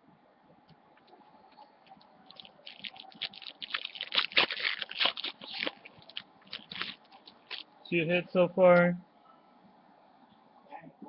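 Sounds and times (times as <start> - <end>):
packaging crinkling and crackling: 1.8 - 7.7.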